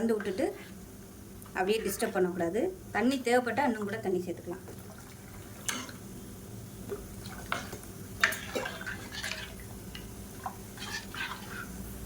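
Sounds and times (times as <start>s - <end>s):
liquid splashing: 7.2s - 9.6s.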